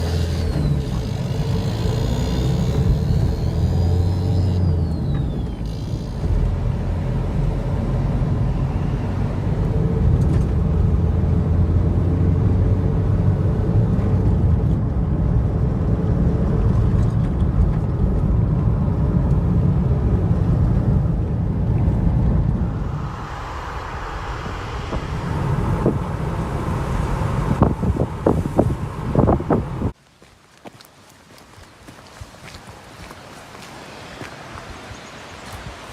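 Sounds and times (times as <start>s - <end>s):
vehicle driving rumble: 0.0s - 30.0s.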